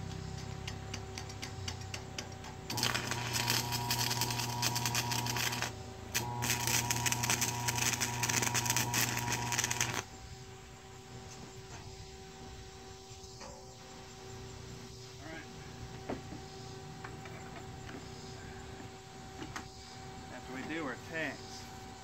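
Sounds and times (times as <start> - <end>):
welding arc crackling: 0.9 - 10.1
steady hum: 1.4 - 22.0.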